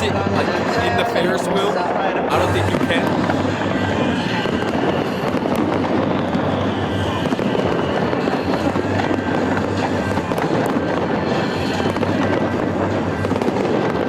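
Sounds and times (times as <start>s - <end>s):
music playing: 0.0s - 3.2s.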